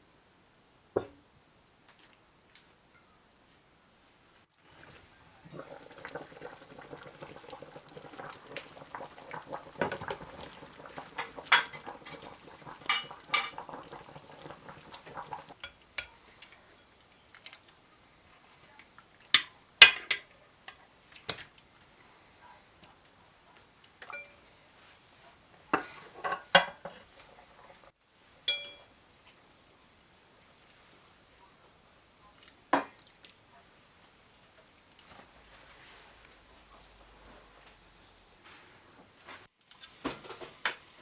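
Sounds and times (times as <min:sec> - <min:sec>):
dishes and utensils clinking: 0:09.8 - 0:14.4, 0:24.0 - 0:24.5, 0:25.7 - 0:27.5, 0:28.4 - 0:28.9.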